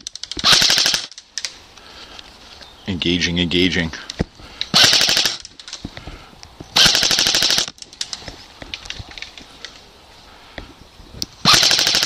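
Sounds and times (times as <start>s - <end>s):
airsoft rifle full-auto burst: 0.4s - 1.1s, 4.7s - 5.4s, 6.8s - 7.7s, 11.5s - 12.0s.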